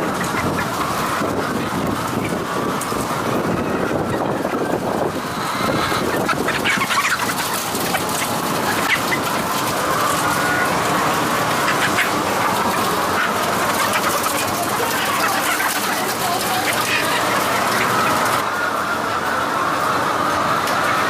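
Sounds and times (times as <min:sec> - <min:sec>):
hens clucking and squawking: 0:00.0 - 0:21.0.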